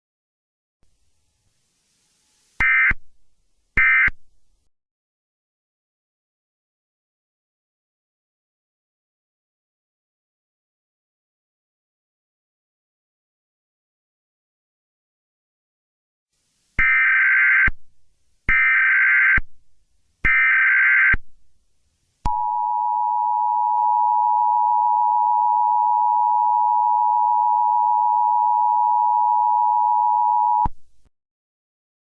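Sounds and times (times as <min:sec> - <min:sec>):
buzzing data tone bursts: 0:02.6 - 0:03.0, 0:03.8 - 0:04.2, 0:16.8 - 0:17.8, 0:18.5 - 0:19.5, 0:20.3 - 0:21.2.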